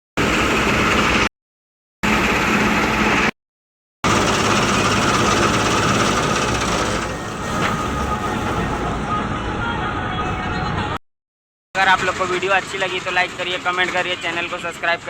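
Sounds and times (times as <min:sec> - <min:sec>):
harvesting machinery engine humming: 0:04.1 - 0:09.3.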